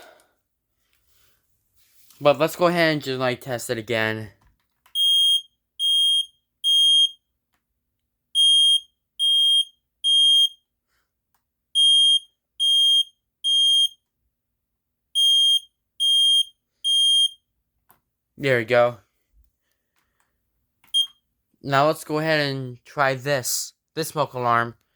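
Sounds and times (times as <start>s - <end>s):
smoke alarm beeping: 4.9s - 7.3s, 8.3s - 10.7s, 11.7s - 14.0s, 15.2s - 17.5s, 20.9s - 21.3s.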